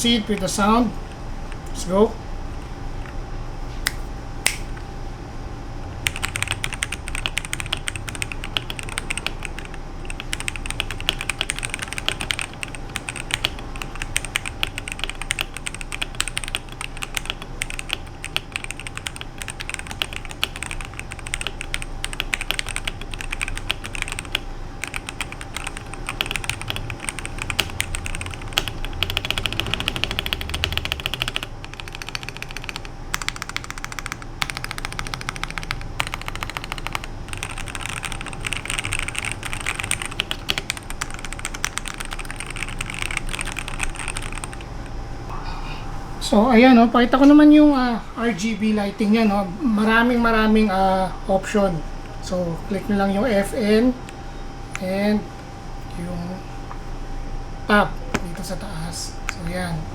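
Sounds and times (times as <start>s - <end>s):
mechanical keyboard typing: 6.0s - 44.7s.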